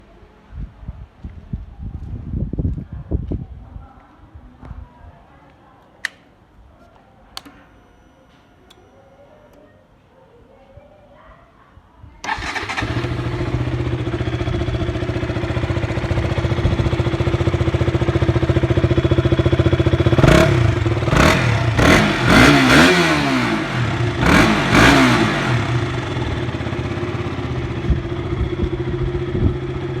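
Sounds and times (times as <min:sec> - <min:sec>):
motorcycle engine idling and revving: 0:12.2 - 0:30.0.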